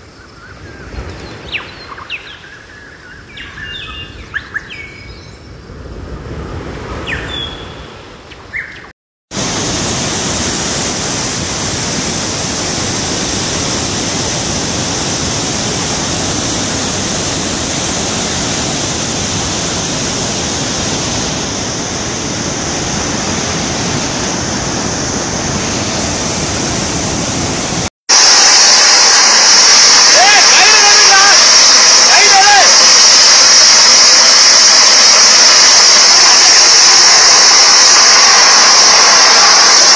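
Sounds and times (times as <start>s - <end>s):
bird chirps: 0.2s - 5.4s, 7.0s - 8.9s
steady rushing noise: 9.3s - 39.9s.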